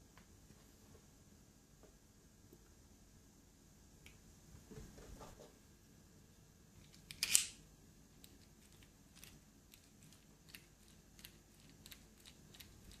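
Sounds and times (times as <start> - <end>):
small metal parts clicking: 6.8 - 7.6.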